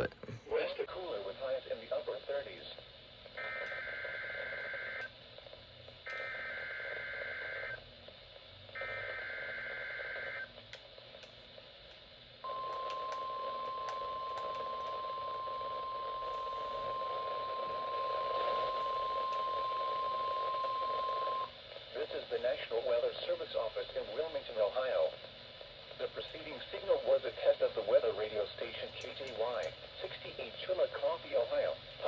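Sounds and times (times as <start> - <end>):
radio background hiss: 0.0 - 32.0
steady alarm tone: 12.5 - 21.5.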